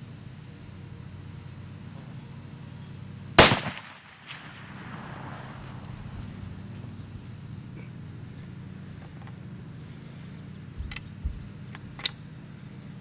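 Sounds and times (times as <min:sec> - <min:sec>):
high insect drone: 0:00.0 - 0:13.0
low hum: 0:00.0 - 0:13.0
rifle shot echo: 0:03.4 - 0:06.4
soft thumps: 0:10.8 - 0:11.8
sharp clicks: 0:10.8 - 0:12.2.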